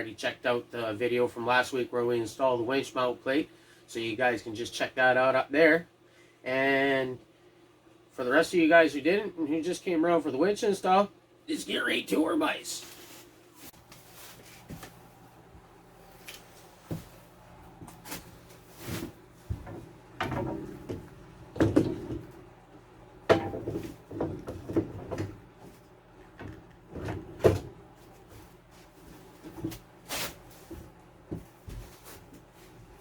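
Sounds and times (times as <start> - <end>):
metal clunks and knocks: 19.5 - 22.5, 23.2 - 25.6, 26.3 - 27.8.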